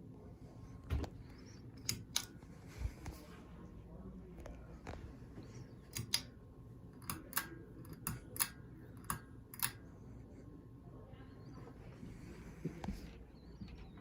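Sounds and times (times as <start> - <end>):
ceiling fan humming: 0.0 - 14.0
pull-chain switch clicks: 5.9 - 6.3, 7.0 - 9.8.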